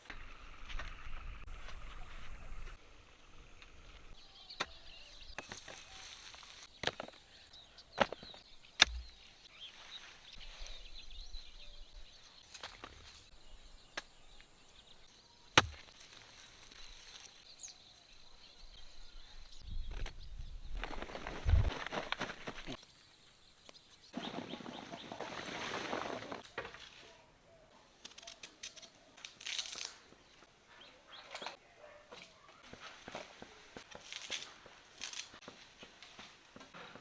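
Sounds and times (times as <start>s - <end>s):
digging tool striking ground: 15.6s - 16.0s.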